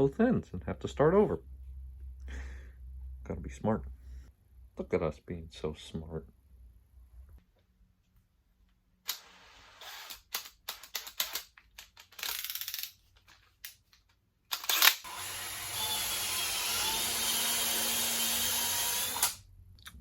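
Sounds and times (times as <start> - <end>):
drill boring into wood: 14.7 - 19.4.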